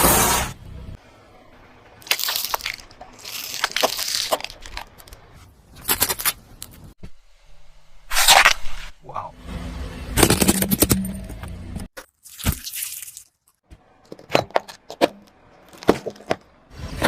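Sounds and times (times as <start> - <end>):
objects crunching under car tyre: 2.0 - 6.4, 14.1 - 17.0.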